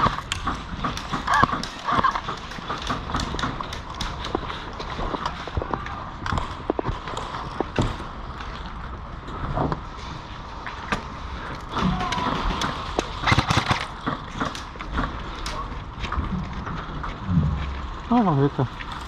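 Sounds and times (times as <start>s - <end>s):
sharp clicks: 13.0s - 14.7s
gear rattling: 13.0s - 15.4s
footsteps: 13.3s - 19.0s.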